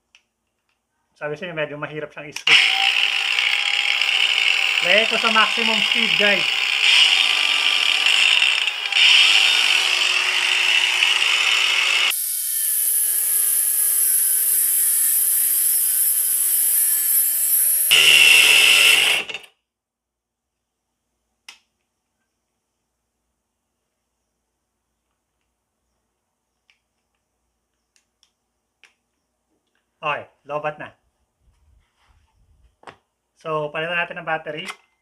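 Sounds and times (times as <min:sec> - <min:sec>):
angle grinder cutting steel: 0:02.4 - 0:19.5
grinder whine: 0:02.5 - 0:19.5.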